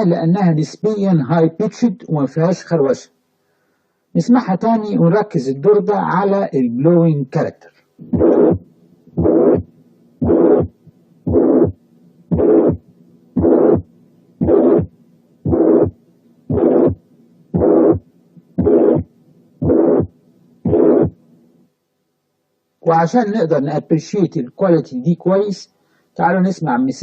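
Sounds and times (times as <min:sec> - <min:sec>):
heartbeat through stethoscope: 0:08.0 - 0:08.6, 0:09.2 - 0:12.8, 0:13.4 - 0:13.8, 0:14.4 - 0:14.9, 0:15.5 - 0:17.0, 0:17.6 - 0:18.0, 0:18.6 - 0:20.1, 0:20.7 - 0:21.2
blowing heart murmur: 0:08.0 - 0:12.8, 0:13.4 - 0:17.0, 0:17.6 - 0:21.2.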